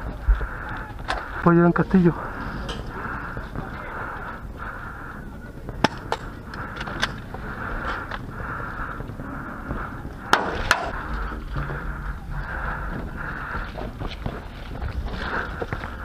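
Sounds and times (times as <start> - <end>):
rustling movement: 5.6 - 16.0.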